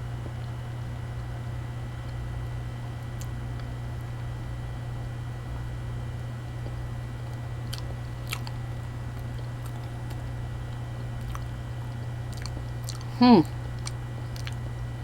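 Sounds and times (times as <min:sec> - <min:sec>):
person chewing: 0:07.6 - 0:14.6.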